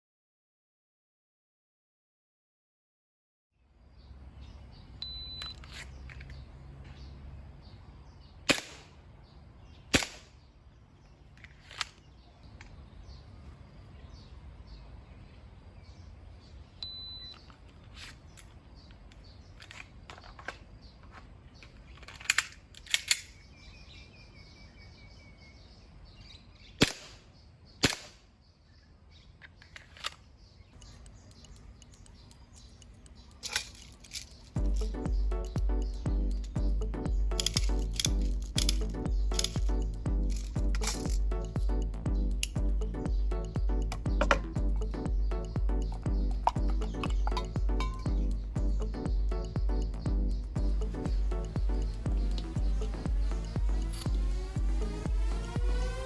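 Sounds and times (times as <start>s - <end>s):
short high beep: 5.0s - 5.6s
airsoft pistol shots: 8.5s - 9.0s, 9.9s - 10.4s, 26.8s - 28.3s.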